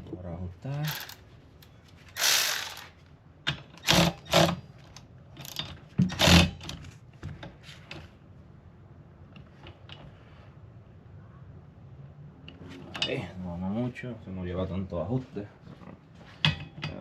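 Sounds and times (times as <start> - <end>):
ratchet wrench clicking: 0.8 - 1.2, 2.2 - 2.8.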